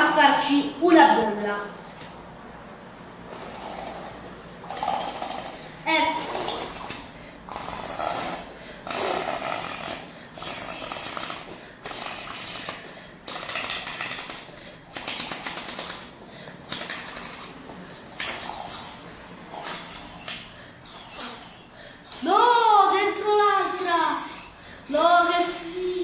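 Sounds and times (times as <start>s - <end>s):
blowing through straw into slime: 3.3s - 16.1s, 18.2s - 26.0s.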